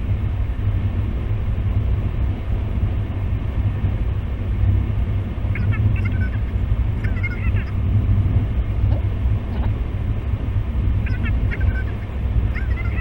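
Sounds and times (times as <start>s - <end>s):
vehicle road and engine rumble: 0.0s - 13.0s
high chirps: 11.1s - 13.0s.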